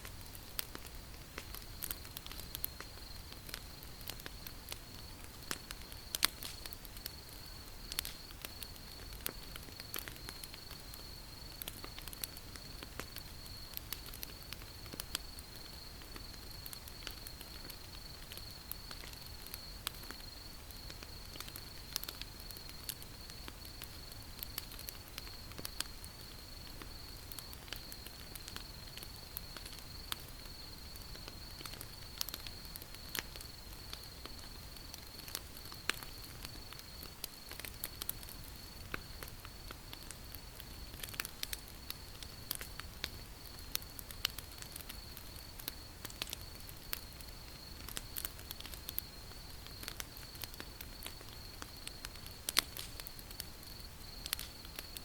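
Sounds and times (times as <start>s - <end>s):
campfire crackling and popping: 0.0s - 55.0s.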